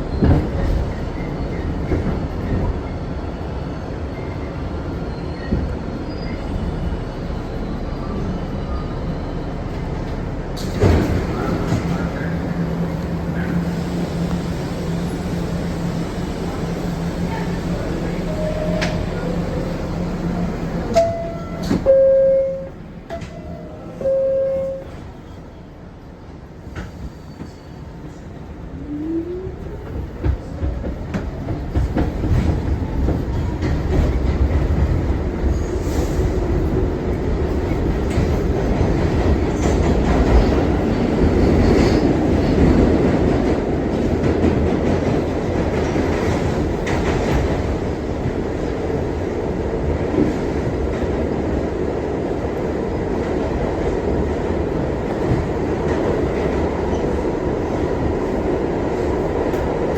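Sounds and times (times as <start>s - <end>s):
subway train motor whine: 0.0s - 26.6s
train wheel clatter: 29.8s - 59.9s.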